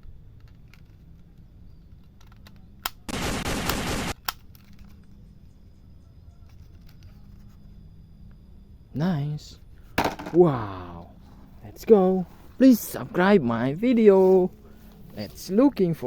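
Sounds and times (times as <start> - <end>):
toy gun rattle: 4.2 - 5.1.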